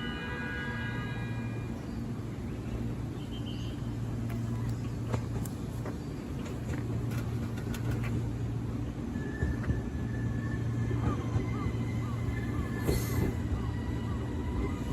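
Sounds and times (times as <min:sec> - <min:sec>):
electric train hum and rumble: 0:00.0 - 0:14.9
wheels clicking on track: 0:04.2 - 0:14.9.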